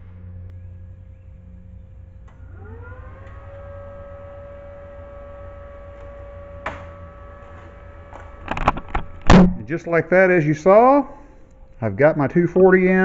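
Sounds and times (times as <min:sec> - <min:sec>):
low electrical hum: 0:00.0 - 0:13.0
small electric motor whine: 0:00.1 - 0:09.5.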